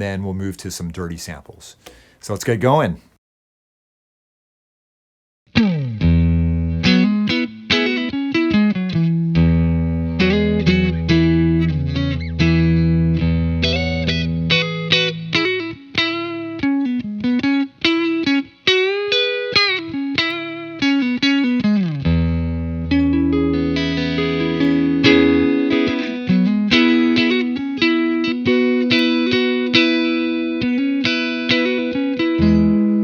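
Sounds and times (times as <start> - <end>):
clean electric guitar playing: 5.5 - 33.0.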